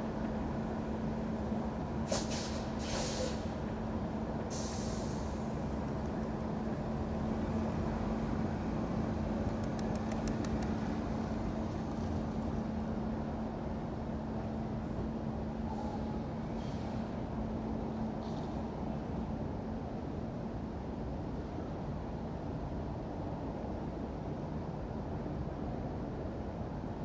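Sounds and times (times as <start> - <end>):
city street traffic rumble: 0.0 - 27.0
short sharp hisses: 2.1 - 3.5
light ticks: 9.4 - 11.0.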